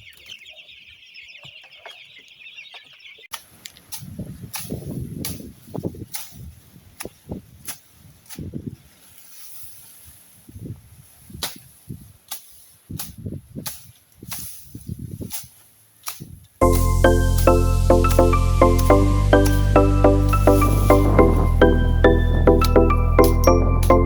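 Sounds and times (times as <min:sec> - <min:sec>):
music: 0:16.6 - 0:24.0.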